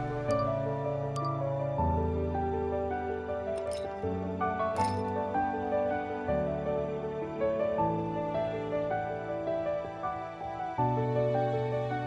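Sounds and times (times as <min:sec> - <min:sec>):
soft slow instrumental music: 0:00.0 - 0:12.0.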